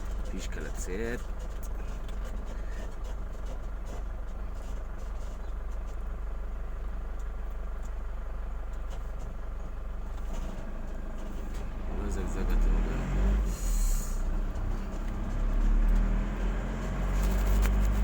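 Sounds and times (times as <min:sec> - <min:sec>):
car engine rumble: 0:00.0 - 0:18.0
road noise: 0:00.0 - 0:18.0.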